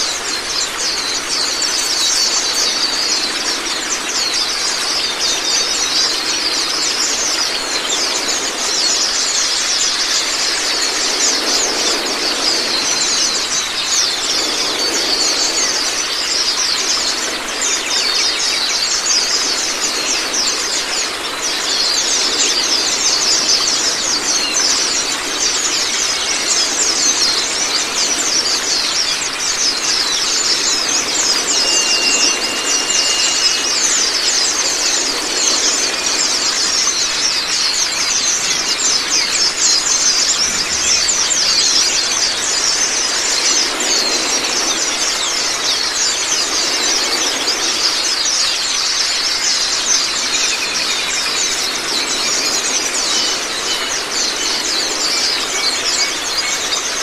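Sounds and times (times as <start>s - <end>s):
birds chirping and trilling: 0.0s - 57.0s
flowing water: 0.0s - 57.0s.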